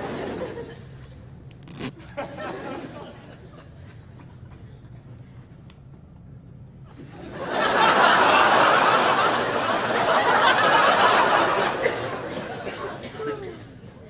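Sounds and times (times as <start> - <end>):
audience laughing: 0.0 - 1.0, 2.0 - 4.8, 6.9 - 13.7.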